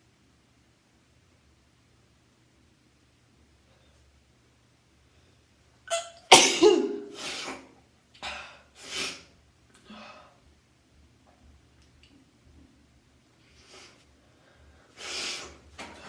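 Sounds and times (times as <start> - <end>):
person sneezing: 5.9 - 7.7
short breathy bursts: 13.5 - 15.7.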